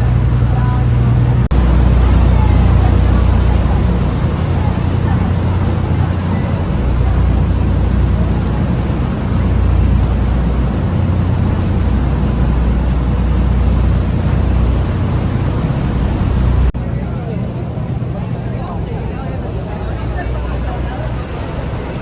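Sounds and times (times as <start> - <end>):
rushing waterfall with deep rumble: 1.4 - 16.7.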